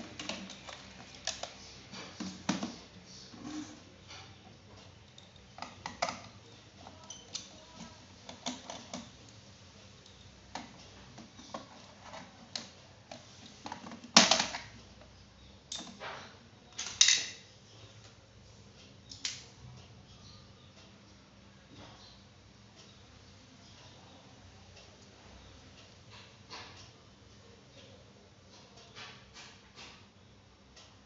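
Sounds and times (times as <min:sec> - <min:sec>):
laptop parts clicking and knocking: 0:00.0 - 0:02.8, 0:05.1 - 0:09.2, 0:10.5 - 0:14.8.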